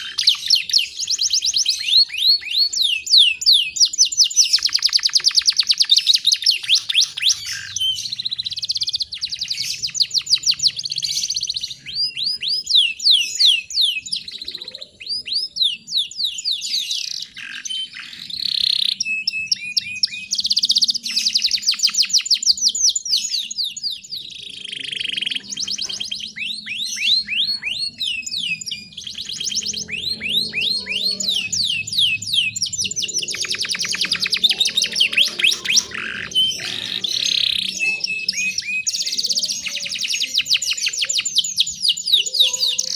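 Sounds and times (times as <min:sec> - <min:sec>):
canary singing trills: 0:00.0 - 0:42.9.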